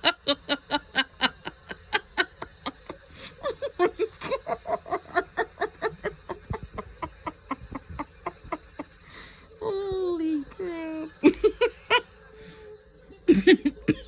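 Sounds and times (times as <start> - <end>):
person laughing uncontrollably: 0.0 - 9.0, 11.2 - 12.0.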